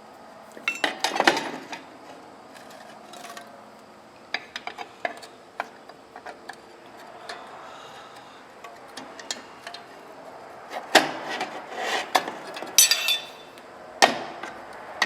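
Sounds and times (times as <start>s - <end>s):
metal parts clicking and clanking: 0.6s - 1.9s, 12.1s - 13.6s.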